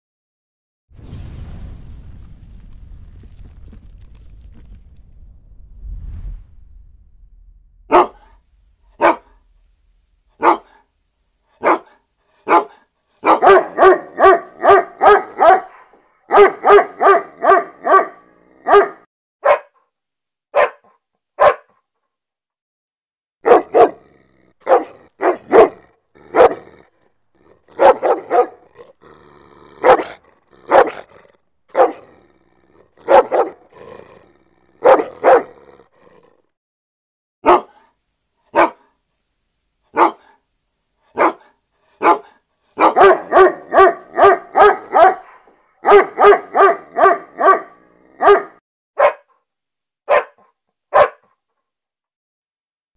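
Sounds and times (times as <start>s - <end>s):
dog barking aggressively: 7.9s - 8.3s, 8.9s - 9.4s, 10.4s - 10.8s, 11.6s - 19.8s, 20.5s - 21.7s, 23.4s - 36.3s, 37.4s - 37.9s, 38.5s - 38.9s, 39.9s - 40.4s, 41.1s - 49.3s, 50.1s - 51.3s.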